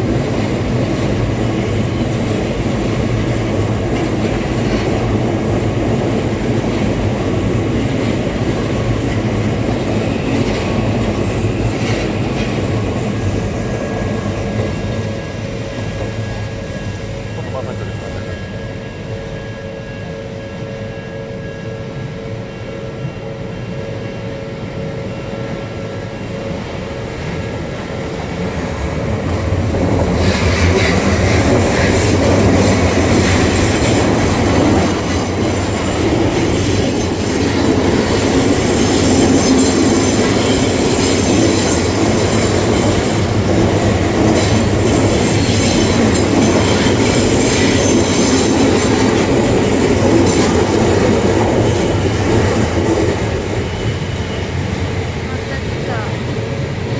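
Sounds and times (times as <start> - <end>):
train wheel squeal: 7.8 - 27.7, 30.1 - 56.0
train wheels clattering: 28.0 - 56.0.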